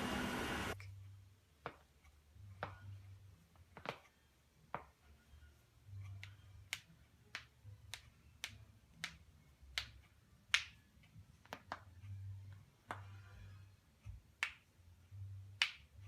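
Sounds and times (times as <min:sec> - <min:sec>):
finger snaps on a beat: 0:06.1 - 0:11.9, 0:14.3 - 0:14.7, 0:15.5 - 0:16.0.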